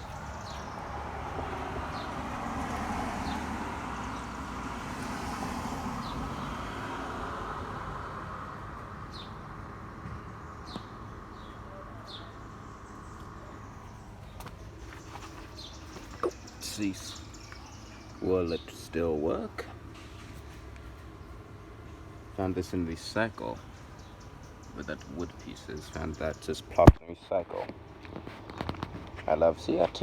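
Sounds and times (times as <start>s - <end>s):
car passing: 0.0s - 26.5s.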